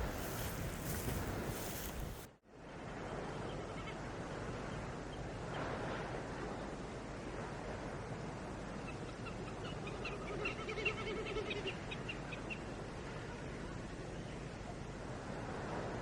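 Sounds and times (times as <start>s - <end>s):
outdoor wind: 0.0s - 16.0s.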